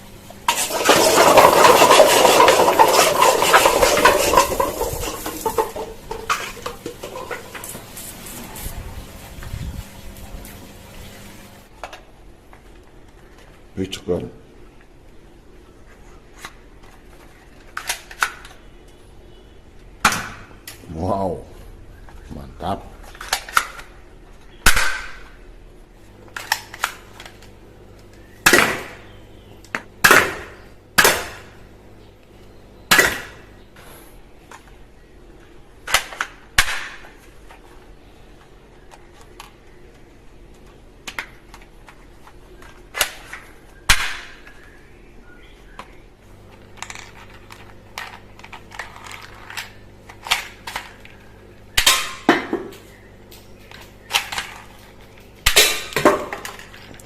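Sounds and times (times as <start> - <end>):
handling clatter: 0.5 - 8.1
toy gun plastic snaps: 17.6 - 18.6.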